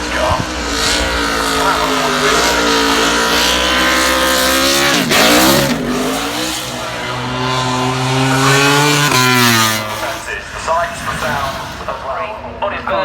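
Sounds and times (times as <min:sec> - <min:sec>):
race car engine revving: 0:00.0 - 0:12.8.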